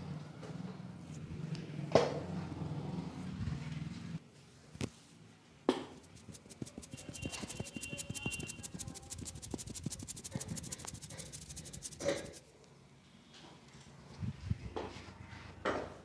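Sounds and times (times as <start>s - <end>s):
rapid massage strokes: 5.9s - 12.5s.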